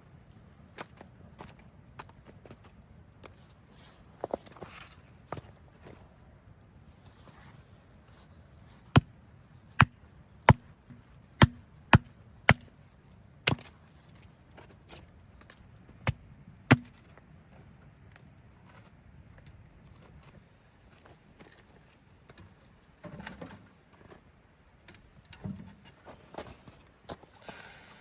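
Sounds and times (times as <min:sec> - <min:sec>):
axe chopping firewood: 0:08.9 - 0:09.2, 0:09.8 - 0:10.7, 0:11.4 - 0:12.8, 0:13.4 - 0:13.7, 0:16.0 - 0:17.0.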